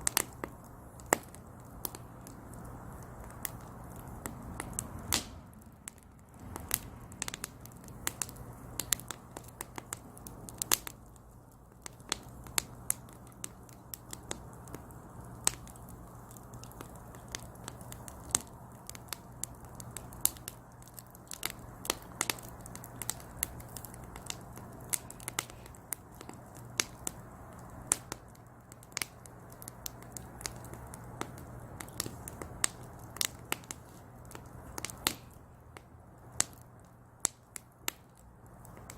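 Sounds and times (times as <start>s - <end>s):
faint steady hum: 0.0s - 38.9s
low rush of flame: 0.0s - 38.9s
wood fire crackling and popping: 0.0s - 38.9s.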